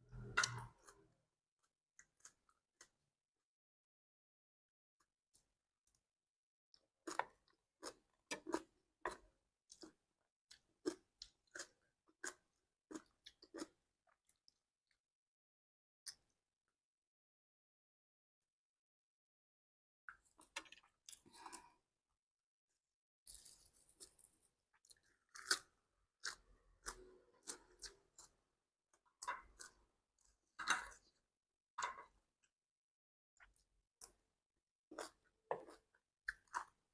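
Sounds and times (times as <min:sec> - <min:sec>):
chewing crunchy food: 0:06.9 - 0:14.6, 0:23.3 - 0:32.2, 0:34.9 - 0:36.9.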